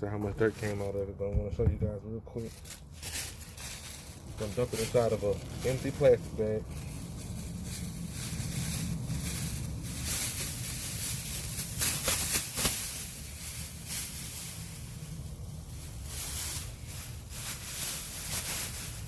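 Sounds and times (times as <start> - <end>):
low rumble: 0.0 - 12.0, 12.8 - 19.0
plastic bag crinkling: 0.3 - 1.0, 2.4 - 19.0.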